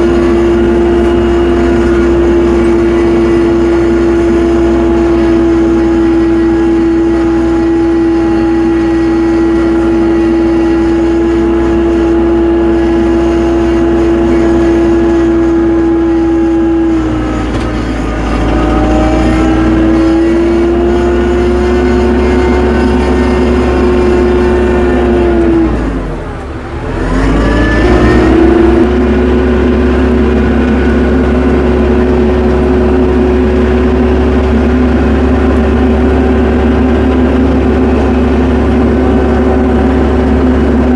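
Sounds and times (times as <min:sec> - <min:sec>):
tractor engine running: 0:00.0 - 0:40.9.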